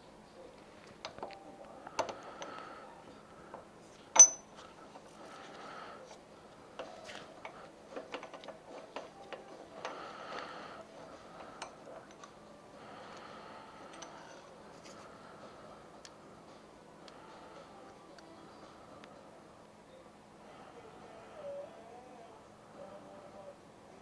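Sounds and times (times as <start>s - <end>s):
metal parts and tools clinking: 4.1s - 4.6s, 13.8s - 14.4s
sharp ringing metal clink: 4.2s - 4.5s.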